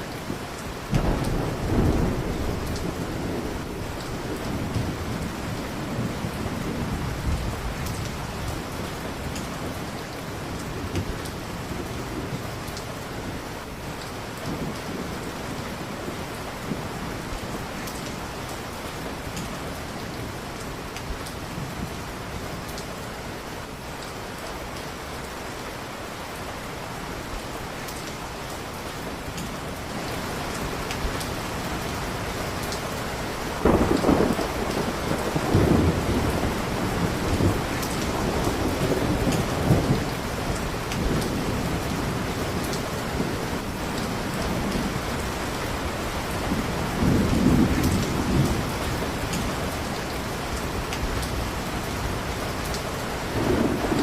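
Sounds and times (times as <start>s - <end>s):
heavy rain: 0.0s - 54.0s
thunder rumbling: 0.3s - 13.4s, 33.2s - 52.6s, 53.2s - 54.0s.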